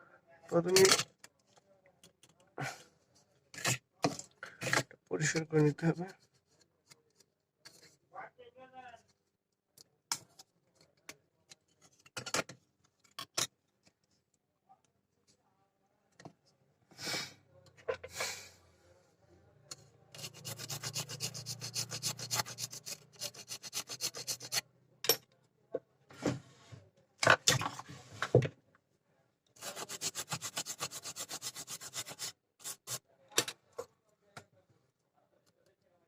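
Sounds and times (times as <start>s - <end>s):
rapid scrubbing on circuit board: 20.2s - 24.6s, 29.6s - 33.0s.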